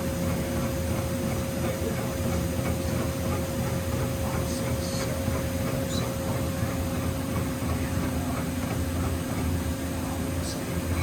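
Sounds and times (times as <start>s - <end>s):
industrial machinery humming: 0.0s - 11.0s.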